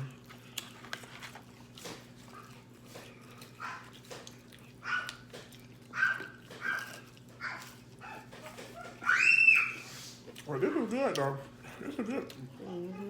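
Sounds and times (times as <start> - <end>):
dog whimpering: 7.4 - 9.9, 12.4 - 13.0.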